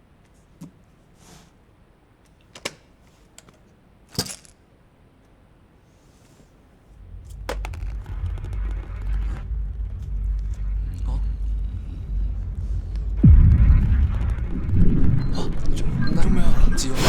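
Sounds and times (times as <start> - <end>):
low rumbling drone: 7.0 - 17.0.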